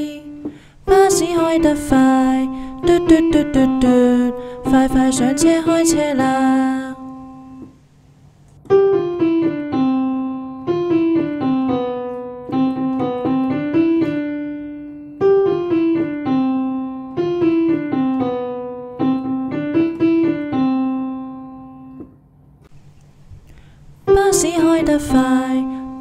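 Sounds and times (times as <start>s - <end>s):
solo piano melody: 0.0s - 7.8s, 8.6s - 23.4s, 24.0s - 26.0s.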